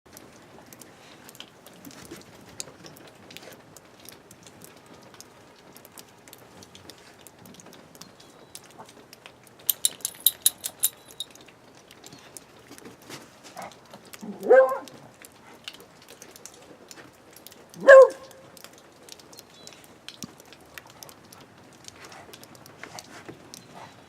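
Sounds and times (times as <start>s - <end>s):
dog collar tags jingling: 9.7s - 11.3s.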